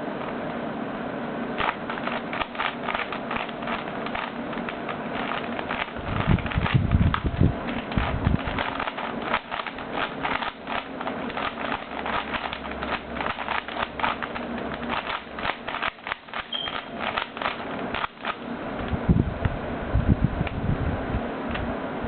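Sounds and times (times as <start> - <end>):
puzzle cube clicking: 1.6 - 18.4.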